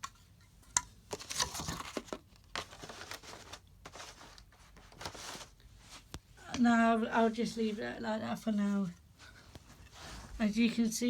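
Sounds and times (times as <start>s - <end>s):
cardboard and packing crinkling: 1.1s - 7.6s.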